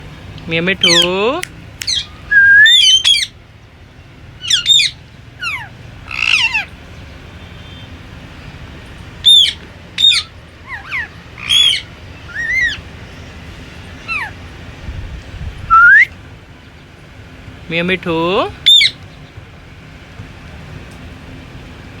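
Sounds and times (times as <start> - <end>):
parakeet squawking: 0.7 - 3.4, 4.4 - 6.8, 9.2 - 13.2, 13.8 - 14.6, 15.7 - 16.1, 18.6 - 19.0.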